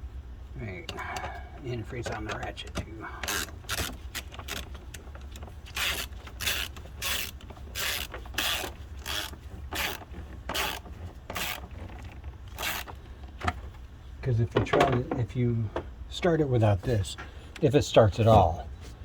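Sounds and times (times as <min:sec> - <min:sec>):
ratchet wrench pawl clicking: 0:03.2 - 0:11.6, 0:12.5 - 0:13.0.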